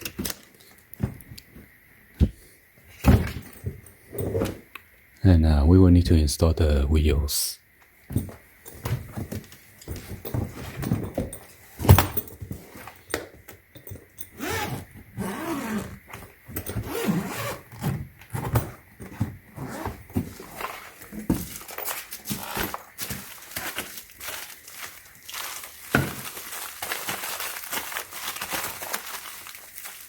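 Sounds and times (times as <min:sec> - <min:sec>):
plastic rustling: 0:20.2 - 0:30.0.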